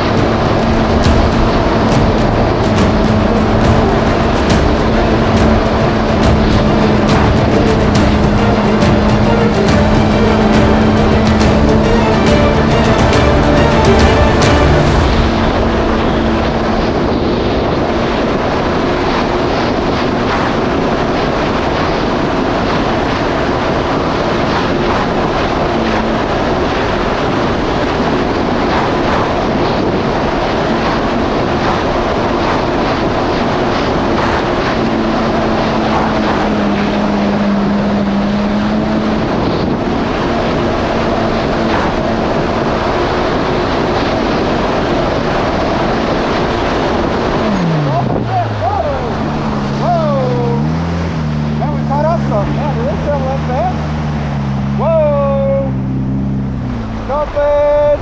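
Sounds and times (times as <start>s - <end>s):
wind and water rushing: 0.0s - 55.0s
jet ski engine running: 32.3s - 57.5s.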